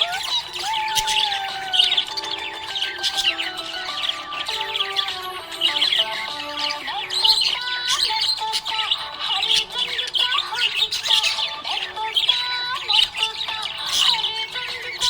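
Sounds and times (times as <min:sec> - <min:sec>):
background tune: 0:00.0 - 0:07.4
budgerigar chirping: 0:00.0 - 0:15.0.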